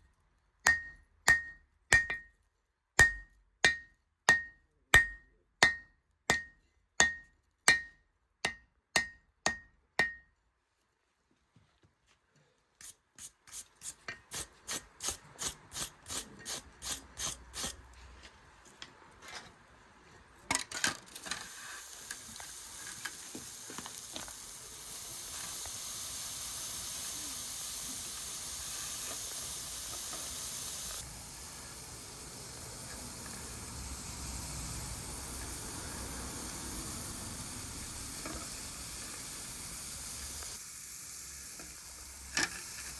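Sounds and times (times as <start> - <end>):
steady hiss: 21.1 - 42.9.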